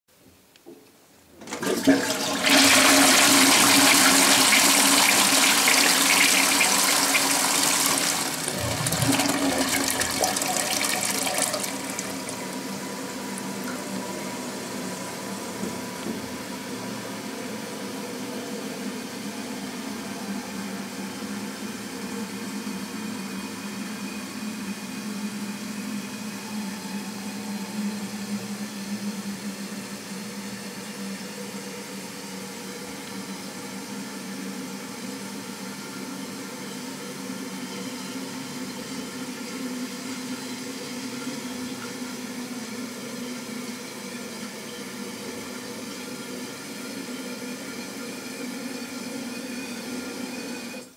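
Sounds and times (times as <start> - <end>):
toilet flushing: 1.4 - 50.9
cistern refilling with water: 1.5 - 15.3.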